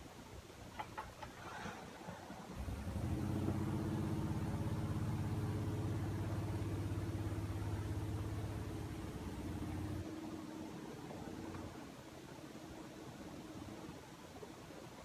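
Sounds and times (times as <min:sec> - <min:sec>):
hot air blower humming: 0:02.6 - 0:14.2.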